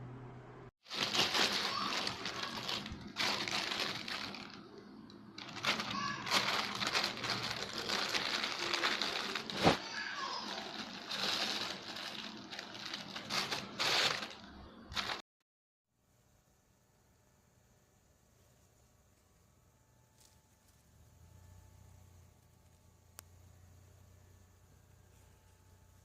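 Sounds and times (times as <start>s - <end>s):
crinkling and rustling: 0.8s - 15.2s.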